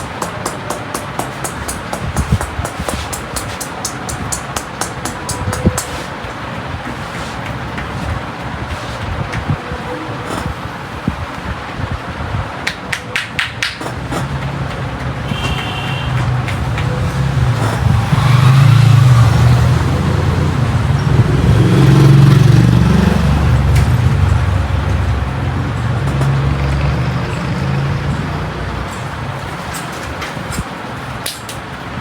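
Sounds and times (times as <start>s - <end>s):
sharp clicks: 0.0s - 6.1s
vehicle engine running: 14.0s - 29.4s.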